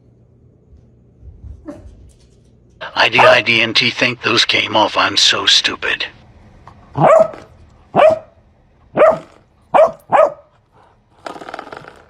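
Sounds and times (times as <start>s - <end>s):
dog barking: 3.1s - 3.4s, 7.0s - 10.6s
rough noisy sound: 11.0s - 12.0s.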